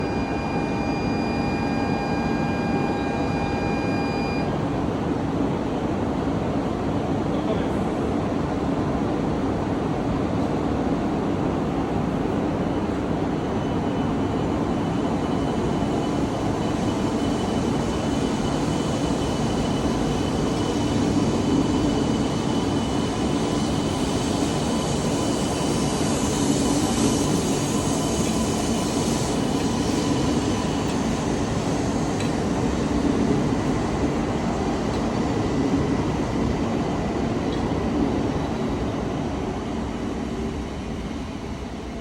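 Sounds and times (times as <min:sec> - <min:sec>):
thin high tone: 0:00.0 - 0:04.5
train running hum: 0:00.0 - 0:42.0.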